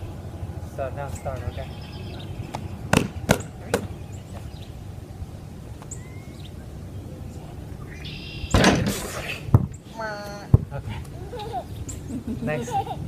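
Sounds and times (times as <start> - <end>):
ball bouncing on hard surface: 2.5 - 3.9
faint bird chirps: 5.8 - 8.6
ball clattering off hoop: 8.6 - 9.7.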